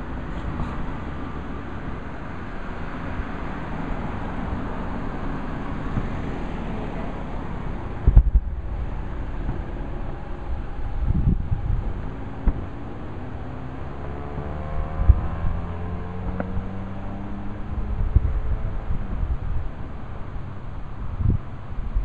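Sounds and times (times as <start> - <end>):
wind on microphone: 0.0 - 22.0
distant fireworks boom: 8.0 - 12.8.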